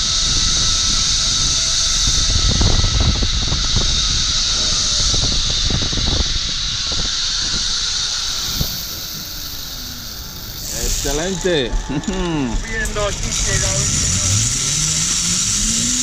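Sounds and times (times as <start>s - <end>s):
wind rumble on microphone: 0.0s - 16.0s
zipline trolley hissing on cable: 0.0s - 16.0s
faint tone sliding downward: 6.3s - 16.0s.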